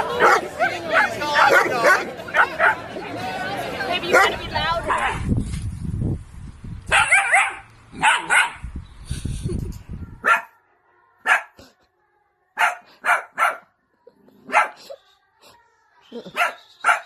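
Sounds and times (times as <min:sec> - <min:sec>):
dog barking: 0:00.1 - 0:02.8, 0:04.1 - 0:04.4, 0:06.9 - 0:08.6, 0:10.2 - 0:10.6, 0:11.2 - 0:11.6, 0:12.6 - 0:13.7, 0:14.4 - 0:14.8, 0:16.3 - 0:17.0.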